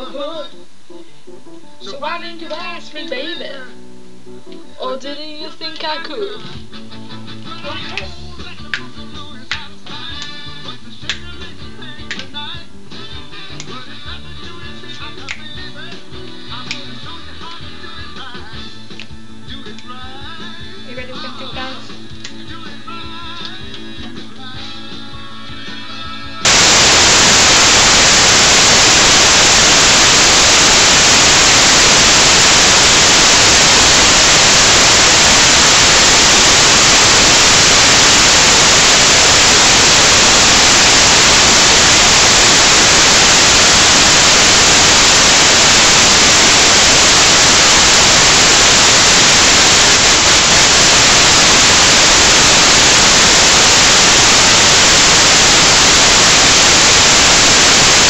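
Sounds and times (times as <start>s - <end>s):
static hiss: 0.0s - 2.0s, 26.4s - 58.0s.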